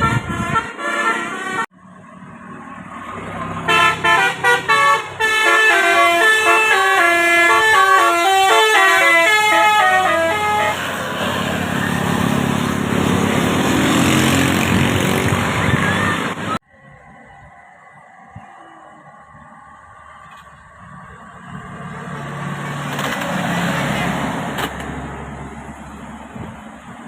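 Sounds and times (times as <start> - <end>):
musical air horn playing a tune: 0.0 - 1.7, 3.7 - 10.9.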